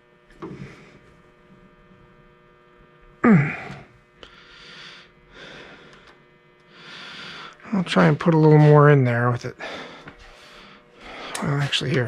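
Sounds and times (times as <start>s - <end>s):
electrical mains hum: 0.0s - 12.0s
click: 5.9s - 6.2s.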